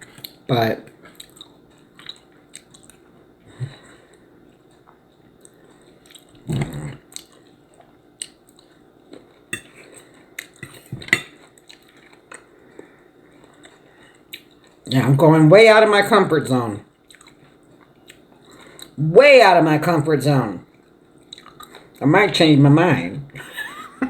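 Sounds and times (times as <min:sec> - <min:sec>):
quiet chewing: 0:00.0 - 0:14.9, 0:16.9 - 0:19.0, 0:20.6 - 0:22.0.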